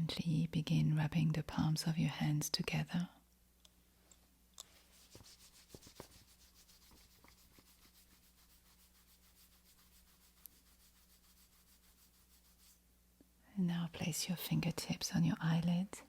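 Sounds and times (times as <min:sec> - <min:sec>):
hands rubbing together: 0:04.6 - 0:12.8.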